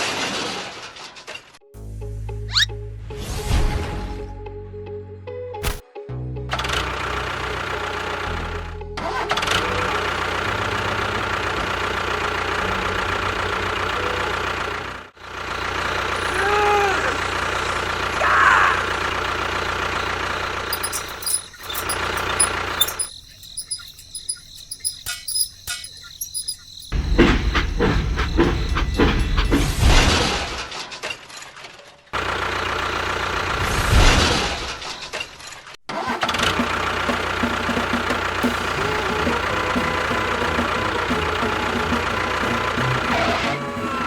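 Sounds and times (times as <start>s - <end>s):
small motor humming: 20.6s - 27.0s
sharp clicks and rattles: 20.7s - 29.7s.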